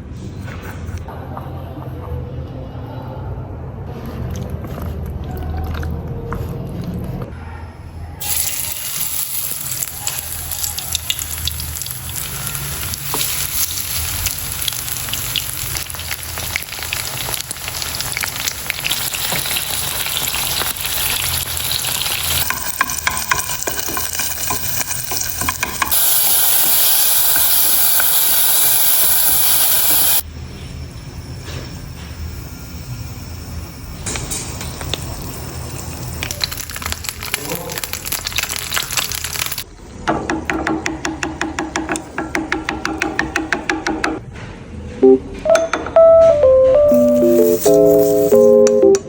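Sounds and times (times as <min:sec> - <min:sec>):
food sizzling in a frying pan: 0:08.2 - 0:30.2, 0:31.8 - 0:39.6, 0:46.9 - 0:48.6.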